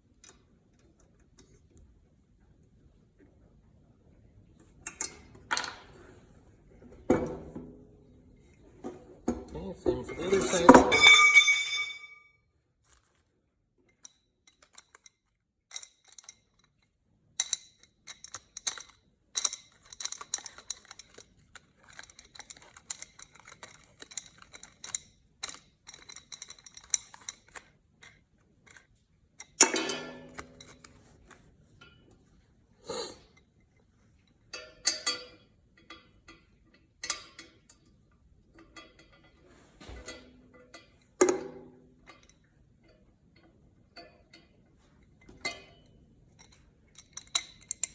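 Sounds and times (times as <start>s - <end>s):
metal parts clanking: 17.4s - 31.0s.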